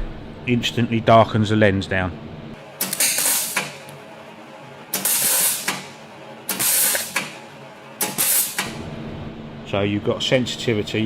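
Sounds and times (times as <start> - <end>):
welding arc crackling hiss: 2.8 - 3.8, 4.9 - 7.4, 8.0 - 8.8.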